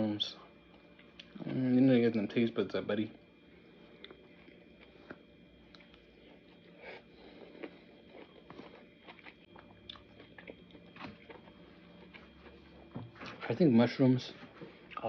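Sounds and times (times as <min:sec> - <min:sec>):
person chewing food: 0:03.9 - 0:12.9.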